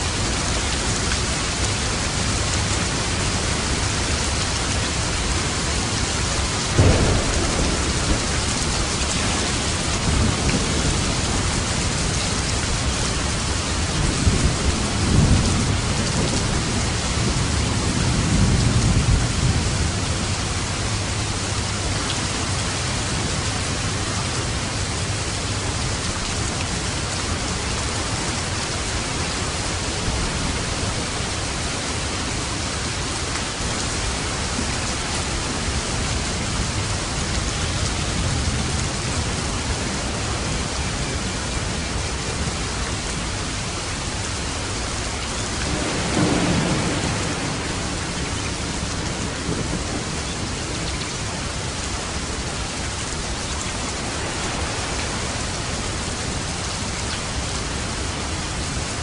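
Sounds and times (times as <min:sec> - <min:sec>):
heavy rain drumming on a roof: 0:00.0 - 0:59.0
low rolling thunder: 0:02.1 - 0:25.1, 0:45.4 - 0:58.2
sharp thunder clap: 0:06.7 - 0:11.3, 0:45.6 - 0:50.1.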